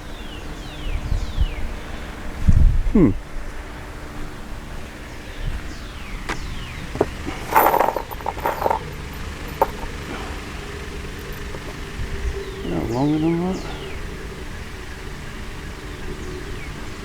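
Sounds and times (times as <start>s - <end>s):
hardware clinking and rustling: 6.3s - 13.8s
metal parts clicking: 6.9s - 11.9s.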